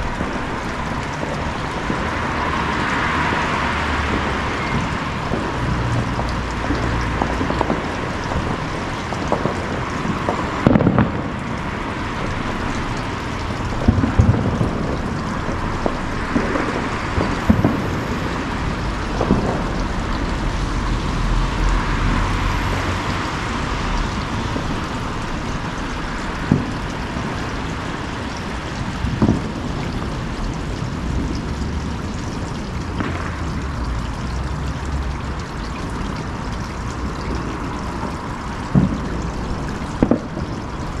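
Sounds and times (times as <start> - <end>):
fireworks bangs: 9.3 - 11.4, 15.8 - 18.4, 19.1 - 20.0, 40.0 - 40.4.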